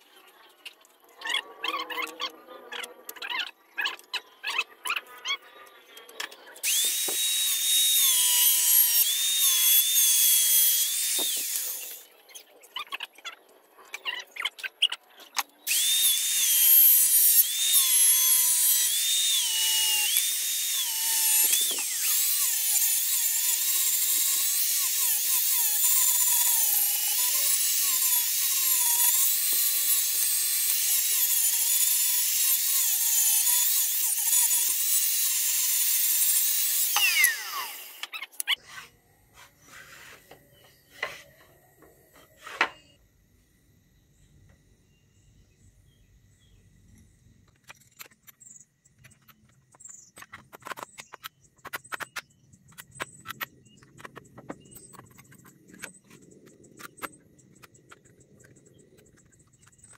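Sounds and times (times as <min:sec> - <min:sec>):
power tool grinding steel: 0:05.8 - 0:12.2, 0:15.6 - 0:40.3.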